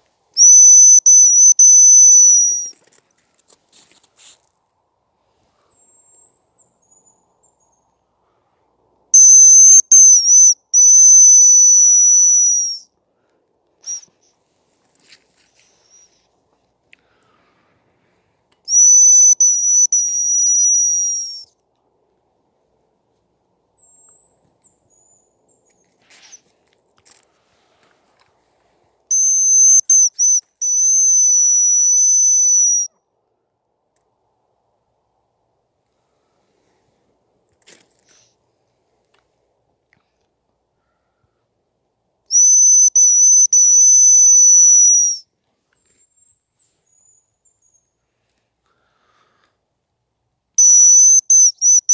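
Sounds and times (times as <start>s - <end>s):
high thin bird whistle lure: 0.4s - 3.0s, 9.2s - 12.8s, 13.8s - 14.4s, 15.4s - 16.3s, 18.7s - 21.5s, 24.9s - 26.5s, 29.1s - 32.9s, 42.3s - 45.2s, 50.6s - 51.9s.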